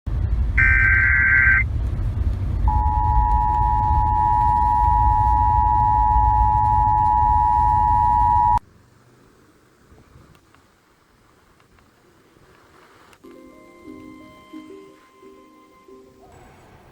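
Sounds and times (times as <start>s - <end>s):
low rumble of noise: 0.1s - 12.8s
screeching digital tones: 0.6s - 1.6s
two-tone alert signal: 0.6s - 1.6s, 2.7s - 8.6s.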